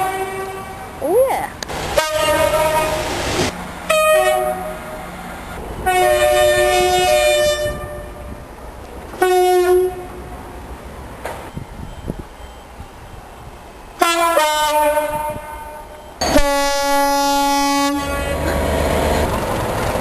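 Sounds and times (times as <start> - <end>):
locomotive two-tone horn blasts: 0.0 - 1.0, 1.9 - 3.1, 3.9 - 4.8, 5.8 - 8.4, 9.2 - 10.2, 14.0 - 19.0.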